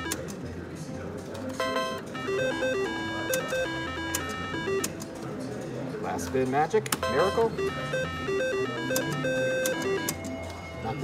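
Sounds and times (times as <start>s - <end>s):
slot machine beeping tune: 0.0s - 0.2s, 1.6s - 5.0s, 7.0s - 11.0s
slot machine reels clicking: 1.6s - 5.0s, 7.0s - 10.4s.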